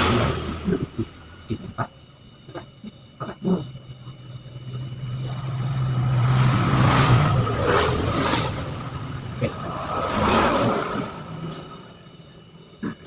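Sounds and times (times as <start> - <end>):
vehicle passing by: 4.6 - 12.0.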